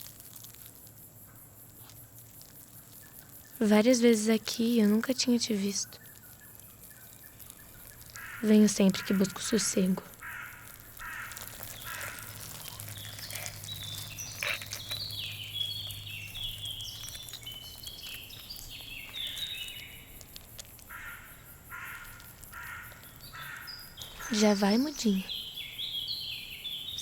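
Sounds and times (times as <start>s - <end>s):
harsh caw-like bird calls: 6.1s - 17.2s, 20.8s - 24.8s.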